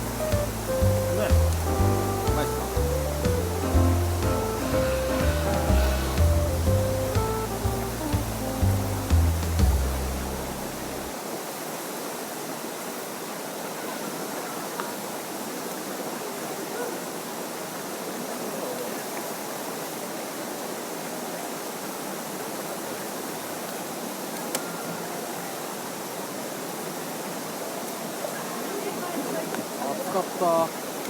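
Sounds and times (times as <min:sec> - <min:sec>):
background music: 0:00.0 - 0:11.1
stream rushing: 0:00.0 - 0:31.0.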